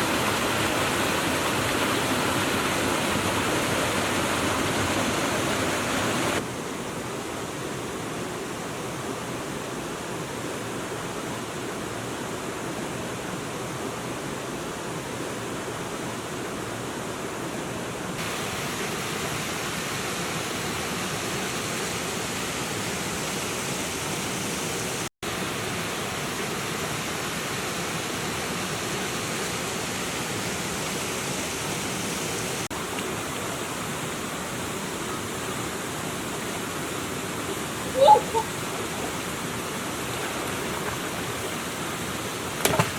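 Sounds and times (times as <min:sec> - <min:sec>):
flowing water rushing: 0:00.0 - 0:42.9.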